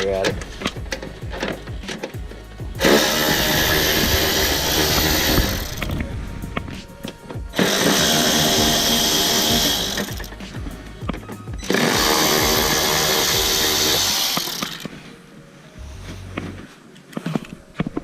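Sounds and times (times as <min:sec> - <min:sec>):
cordless power tool spinning bolts: 0:02.8 - 0:05.9, 0:07.6 - 0:10.4, 0:11.6 - 0:14.9.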